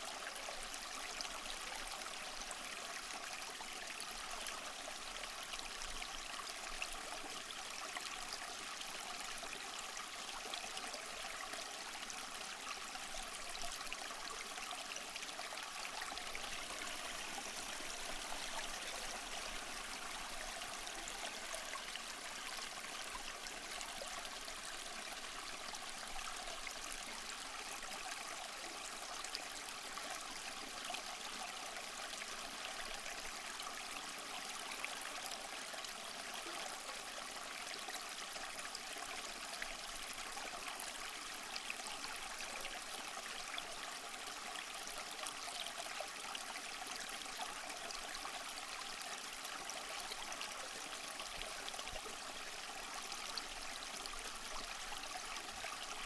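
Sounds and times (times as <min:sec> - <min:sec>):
small waterfall splashing: 0:11.4 - 0:30.0.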